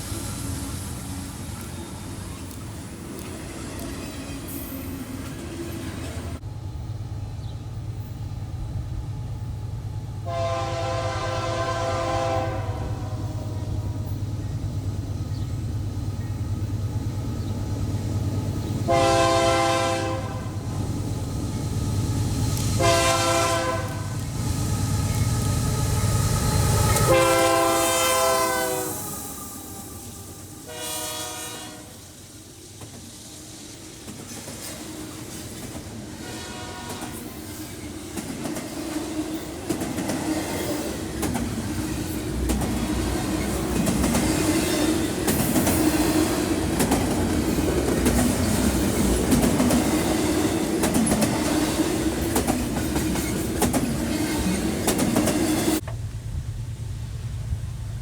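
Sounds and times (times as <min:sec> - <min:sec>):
train wheels clattering on track: 0:00.0 - 0:06.4, 0:09.8 - 0:58.0
locomotive engine rumble: 0:00.0 - 0:34.3, 0:39.5 - 0:58.0
locomotive air horn blasts: 0:10.2 - 0:13.6, 0:18.9 - 0:20.6, 0:22.8 - 0:24.2, 0:25.1 - 0:32.1, 0:36.2 - 0:37.3.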